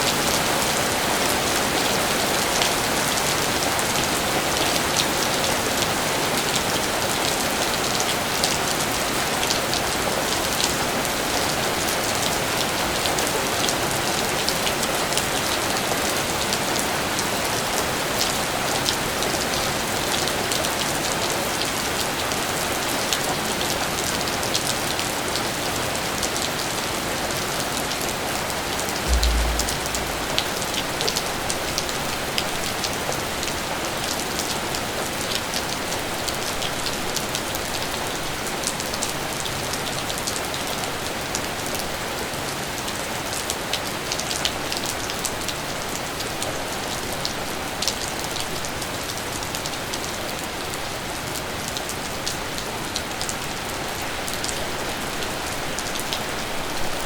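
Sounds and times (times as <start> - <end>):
low thump: 29.1 - 30.7.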